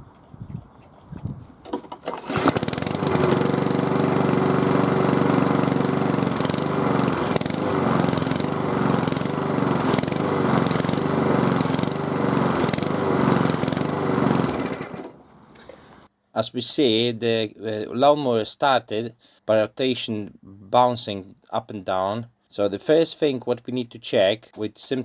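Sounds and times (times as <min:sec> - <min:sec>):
lawnmower engine hunting idle: 0:02.0 - 0:16.1.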